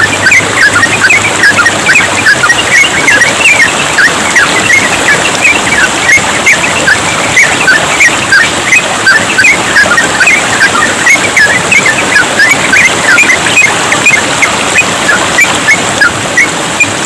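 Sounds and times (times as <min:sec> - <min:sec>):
bird singing whistled notes: 0:00.0 - 0:14.2
trickle of running water: 0:00.0 - 0:17.0.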